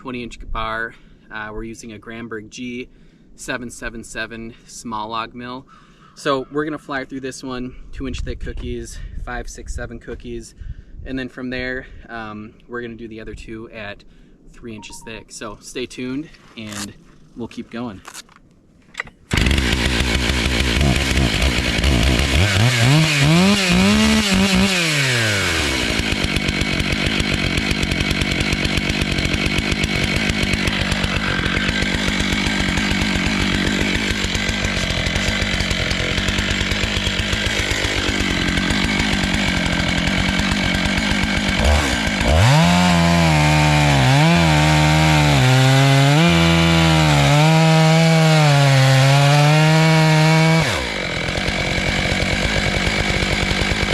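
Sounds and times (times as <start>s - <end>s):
chainsaw cutting log: 19.3s - 53.9s.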